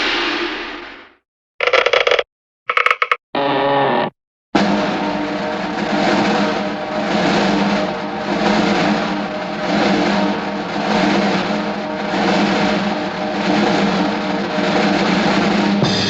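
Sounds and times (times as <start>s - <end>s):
drum roll: 4.6s - 16.0s.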